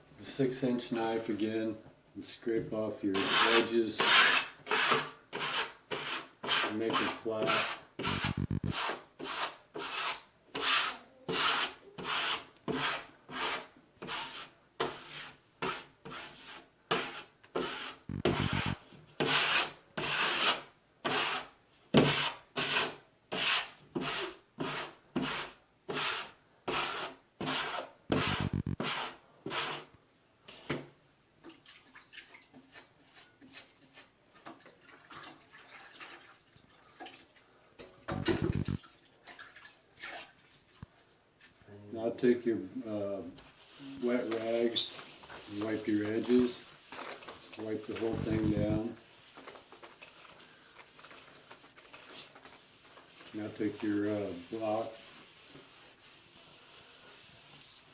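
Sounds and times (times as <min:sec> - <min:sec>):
drywall knife scraping: 0:03.1 - 0:29.9, 0:43.4 - 0:49.8
faint handling sounds: 0:43.2 - 0:57.9.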